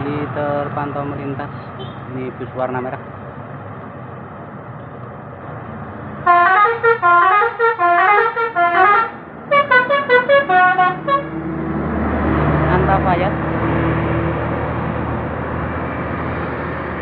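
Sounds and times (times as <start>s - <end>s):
road traffic rumble: 0.0s - 17.0s
musical bus air horn: 6.2s - 11.4s.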